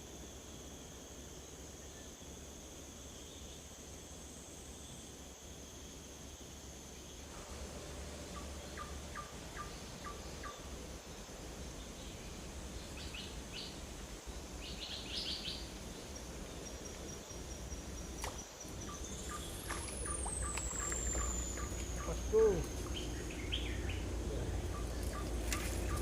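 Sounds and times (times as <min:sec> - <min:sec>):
birds chirping: 0:14.4 - 0:26.0
high-pitched insect drone: 0:14.4 - 0:26.0.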